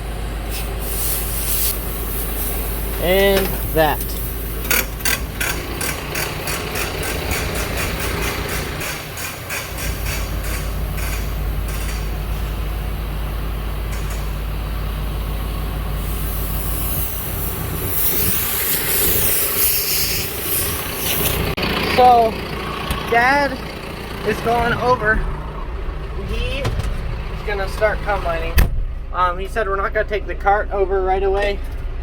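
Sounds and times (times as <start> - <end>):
tractor engine running: 0.0 - 32.0
hiss: 0.4 - 4.8, 16.0 - 21.6.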